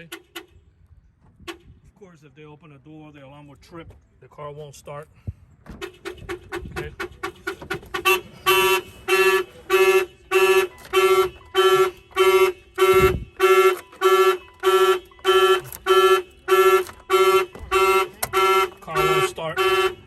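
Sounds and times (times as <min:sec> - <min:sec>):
car alarm blasts: 0:05.7 - 0:20.0.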